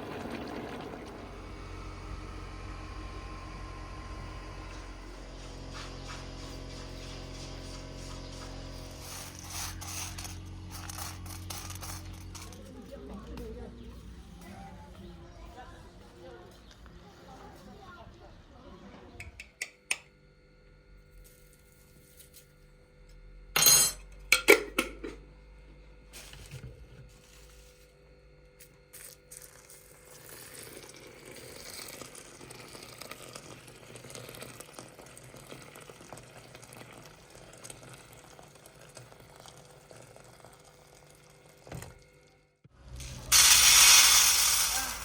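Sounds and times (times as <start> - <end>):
food preparation scraping: 5.5 - 13.0.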